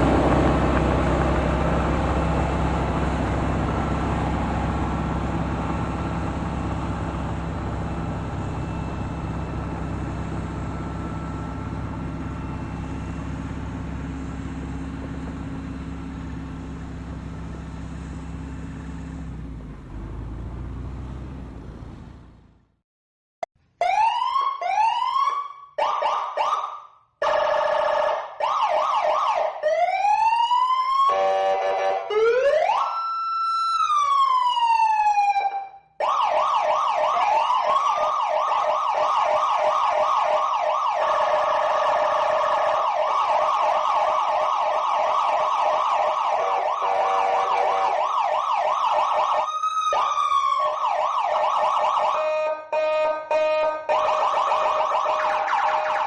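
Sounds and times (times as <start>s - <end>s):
electronic toy siren: 23.8s - 56.0s.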